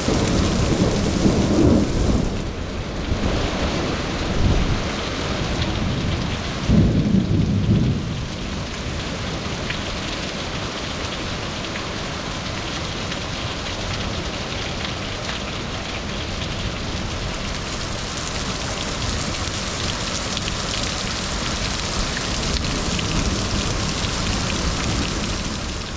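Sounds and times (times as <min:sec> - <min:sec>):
thunder rolling: 0:00.0 - 0:08.4
hail and rain falling: 0:00.0 - 0:25.9.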